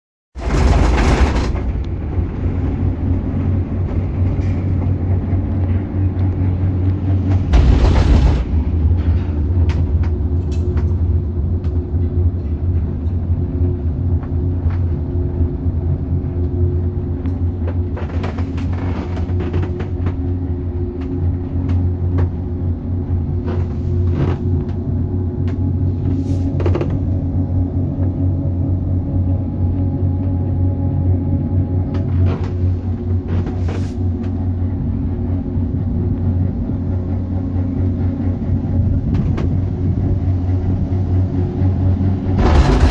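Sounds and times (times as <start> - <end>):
gondola cabin rumbling on cable: 0.4 - 42.9.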